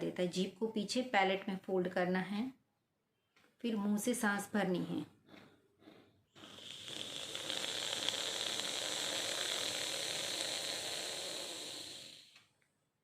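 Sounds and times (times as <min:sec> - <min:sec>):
hissing in-breath: 0:06.4 - 0:12.4.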